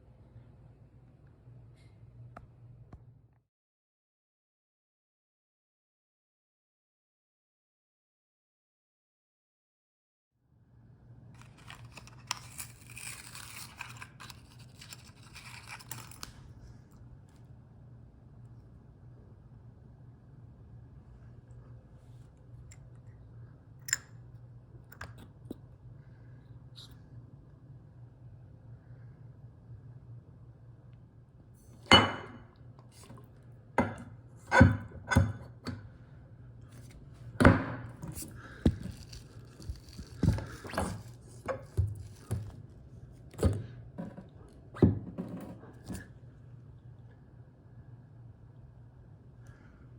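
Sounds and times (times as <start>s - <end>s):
low steady hum: 10.6s - 49.9s.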